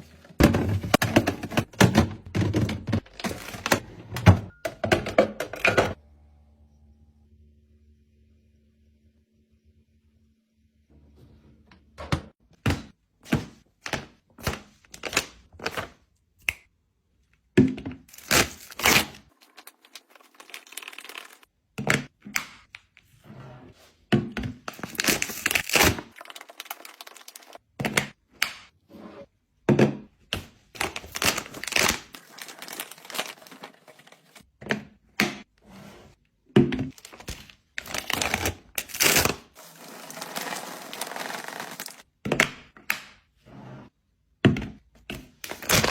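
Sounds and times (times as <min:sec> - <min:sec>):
plastic packaging crinkling: 0:18.1 - 0:21.5, 0:30.8 - 0:34.4, 0:37.0 - 0:42.0.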